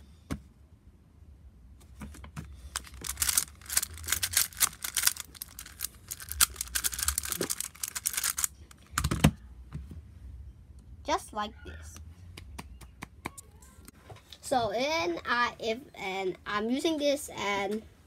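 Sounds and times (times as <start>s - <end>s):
puzzle cube plastic clicks: 2.7s - 9.2s.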